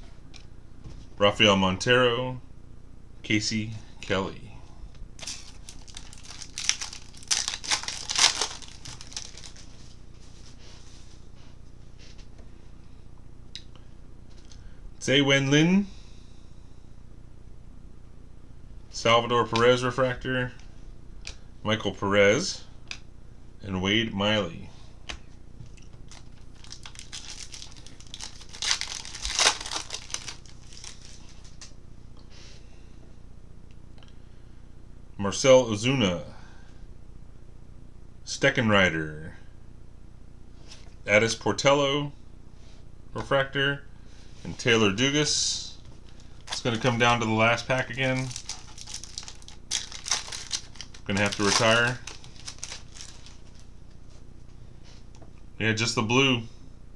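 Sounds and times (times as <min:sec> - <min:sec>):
wrapper crinkling and tearing: 0:05.2 - 0:09.9, 0:25.8 - 0:31.7, 0:46.2 - 0:53.7.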